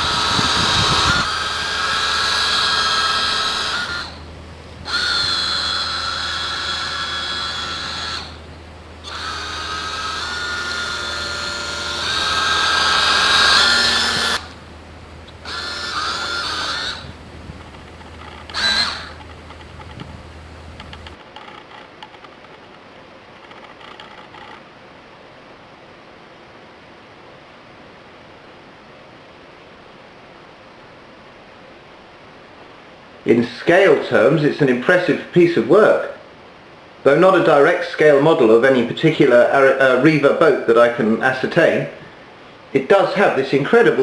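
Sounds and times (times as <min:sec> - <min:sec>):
electric motors whining: 0:00.0 - 0:21.2.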